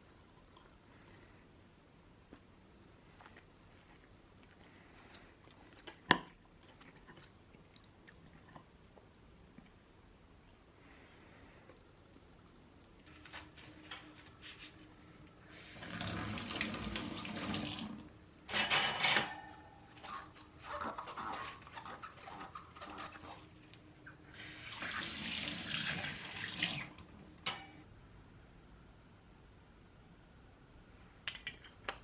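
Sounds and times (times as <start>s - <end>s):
tap water running: 15.6s - 18.2s, 24.4s - 27.6s
dishes clinking and clattering: 18.5s - 21.3s, 27.5s - 27.8s.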